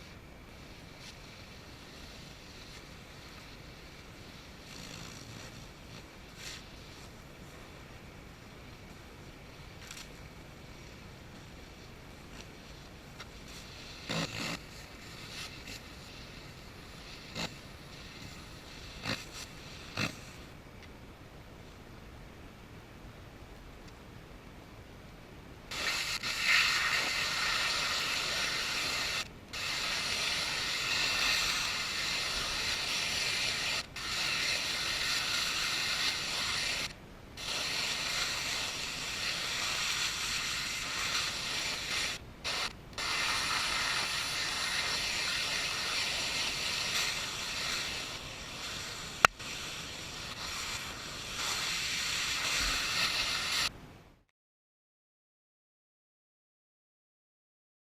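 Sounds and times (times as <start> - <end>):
pressure washer spray hissing: 0.0 - 7.6, 10.8 - 20.5, 25.7 - 53.7.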